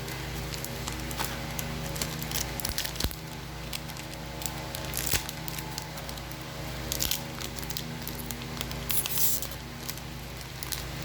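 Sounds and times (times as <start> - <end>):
foil pack crinkling and tearing: 0.0 - 11.0.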